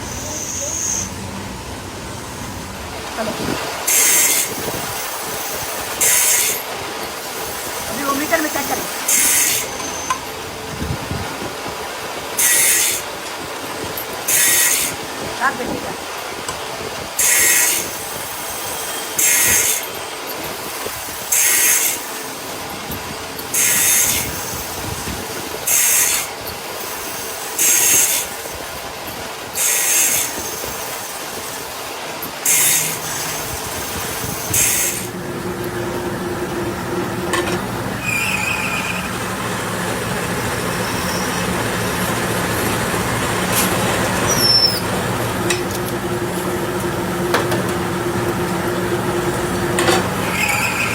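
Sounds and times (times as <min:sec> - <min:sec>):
machine hissing or grinding bursts: 0:02.2 - 0:10.6, 0:11.4 - 0:35.2, 0:37.6 - 0:45.4, 0:50.0 - 0:50.9
steady machine hum with held tone: 0:32.9 - 0:50.9.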